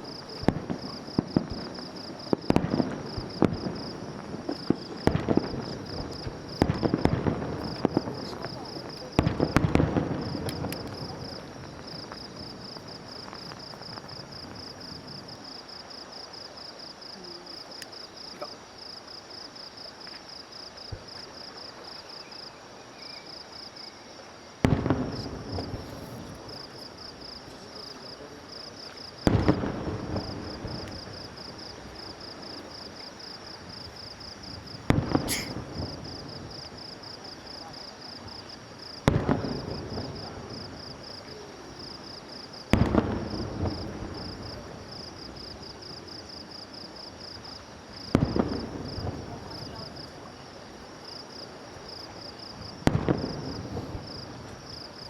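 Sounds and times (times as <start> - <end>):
fireworks bangs with rumble: 0.0 - 15.4, 24.6 - 32.7, 33.6 - 37.0, 37.6 - 41.0, 42.6 - 45.8, 47.9 - 50.1, 52.6 - 54.7.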